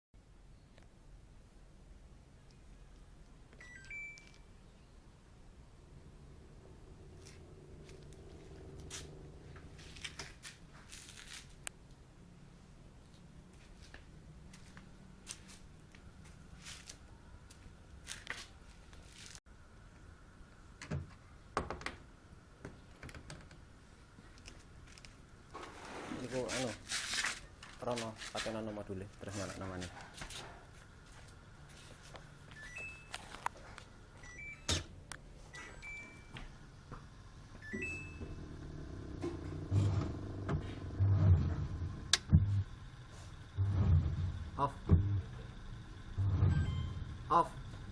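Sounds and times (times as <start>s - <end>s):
washing machine low hum: 5.8s - 10.4s, 34.2s - 47.9s
faint steady hum: 11.6s - 26.1s, 28.6s - 47.9s
short rising beeps: 46.2s - 47.4s.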